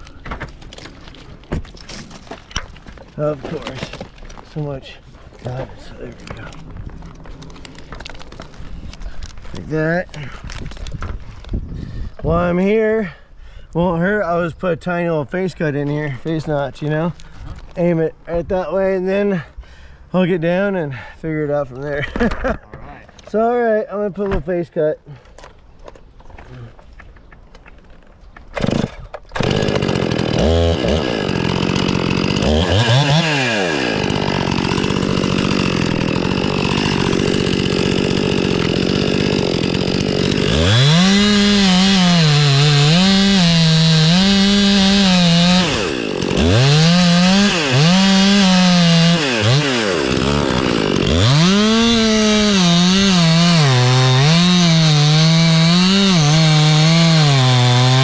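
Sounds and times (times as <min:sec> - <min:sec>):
chainsaw revving and cutting wood: 0:28.6 - 0:58.0.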